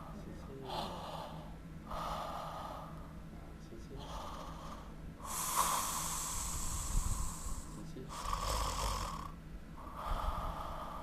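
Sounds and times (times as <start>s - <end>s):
person snoring: 4.0s - 11.0s.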